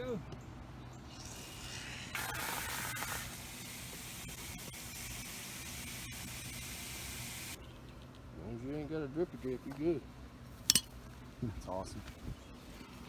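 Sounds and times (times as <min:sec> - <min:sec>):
steady hiss: 0:01.1 - 0:07.6.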